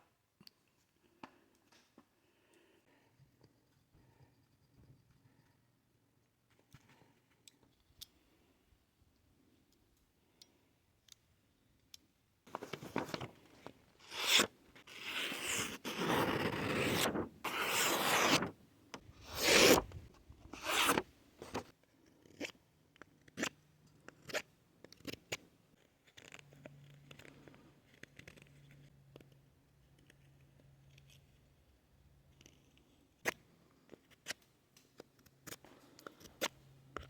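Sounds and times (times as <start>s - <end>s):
multi-tool rasping and scraping: 14.0s - 18.5s, 19.2s - 20.0s, 20.6s - 22.6s.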